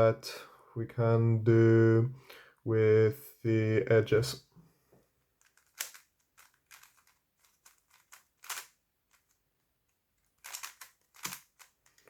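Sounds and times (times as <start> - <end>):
plastic puzzle cube clicking: 5.4 - 12.0.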